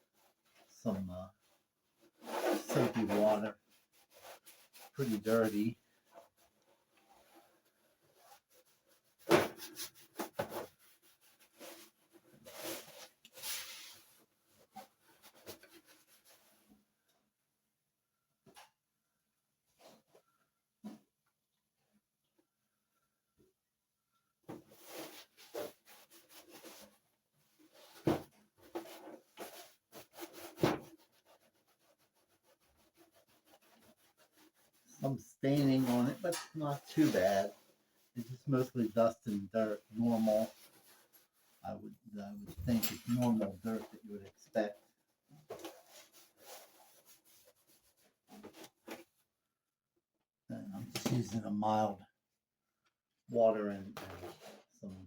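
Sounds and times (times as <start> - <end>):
cloth wiping and rubbing: 1.5 - 16.6, 24.7 - 44.8, 45.5 - 49.2.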